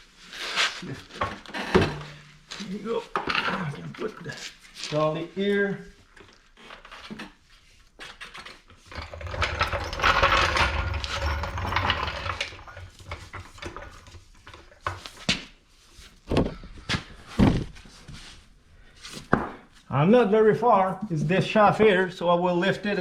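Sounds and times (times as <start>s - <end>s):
floor jack rolling and scraping: 0.1s - 4.4s, 8.0s - 15.6s.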